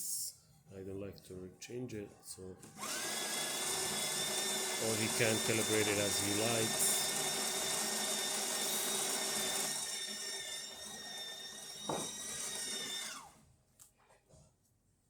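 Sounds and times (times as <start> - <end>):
coffee grinder motor whine: 2.6 - 13.4.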